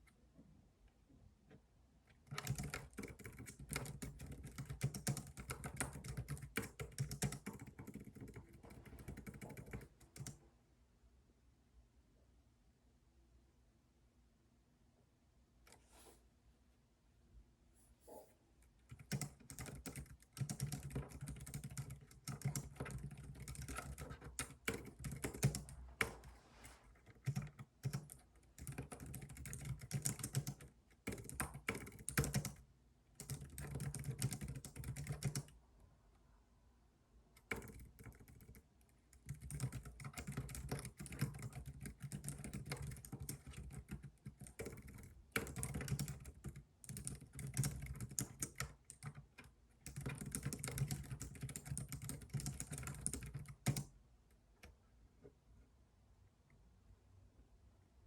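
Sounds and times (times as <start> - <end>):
computer keyboard typing: 2.1 - 10.4, 18.8 - 35.6, 37.4 - 53.9.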